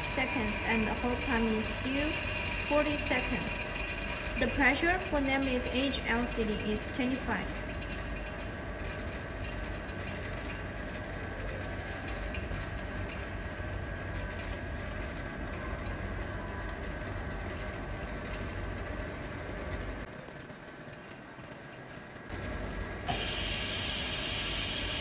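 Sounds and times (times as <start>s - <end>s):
vacuum pump hum and rush: 22.3s - 25.0s.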